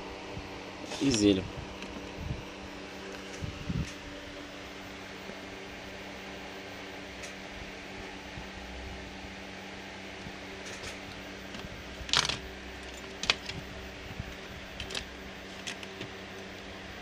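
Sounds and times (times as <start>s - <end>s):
steady background hum: 0.0s - 17.0s
laptop parts clicking and clattering: 10.6s - 13.7s, 14.3s - 16.2s.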